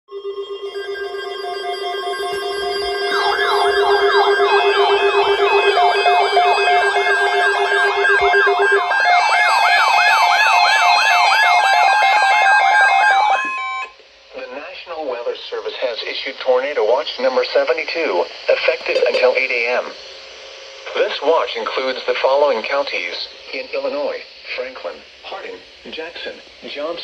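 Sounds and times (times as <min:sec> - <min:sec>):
high beeping tones: 0:00.1 - 0:13.9
low pulsing electronic tone: 0:00.1 - 0:13.9
siren sweeping up in pitch: 0:00.1 - 0:14.0.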